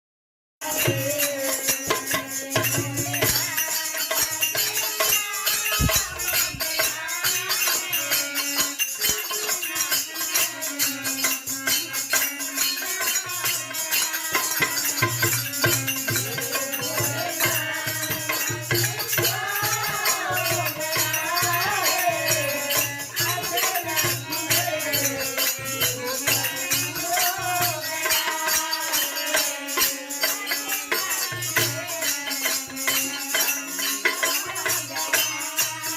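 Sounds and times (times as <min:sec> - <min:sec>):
rattling shaker percussion: 0:00.6 - 0:35.9
person singing: 0:15.9 - 0:35.9.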